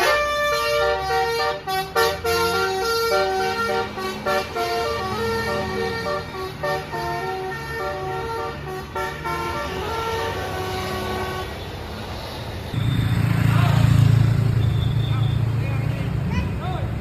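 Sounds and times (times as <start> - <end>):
multi-tone air horn tune: 0.0 - 11.6.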